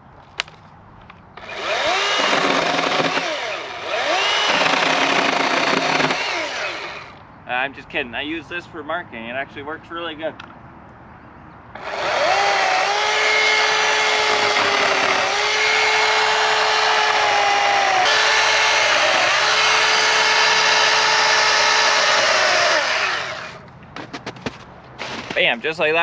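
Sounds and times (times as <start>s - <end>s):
electric power tool whining: 1.4s - 7.2s, 11.8s - 23.6s.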